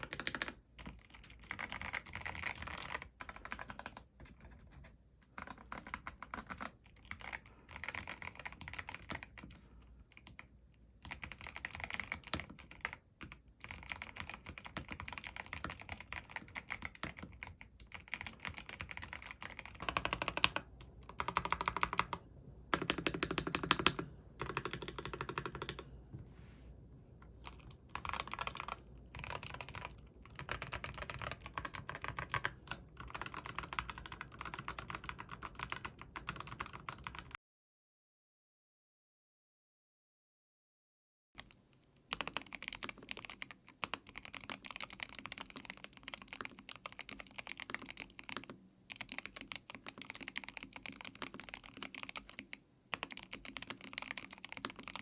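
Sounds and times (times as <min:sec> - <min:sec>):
typing on mechanical keyboard: 0:00.0 - 0:26.0, 0:27.4 - 0:37.4, 0:41.4 - 0:55.0.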